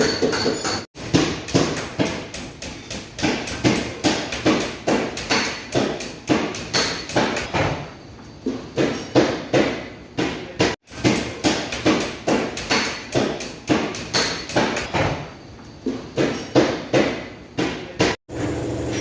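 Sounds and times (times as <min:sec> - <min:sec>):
hammer tapping metal: 0:00.0 - 0:07.6, 0:08.8 - 0:15.2.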